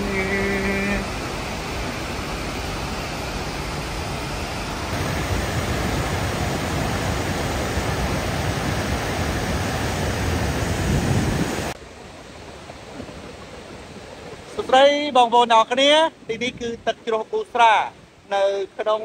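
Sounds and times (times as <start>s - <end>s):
waterfall rushing: 0.0s - 12.9s.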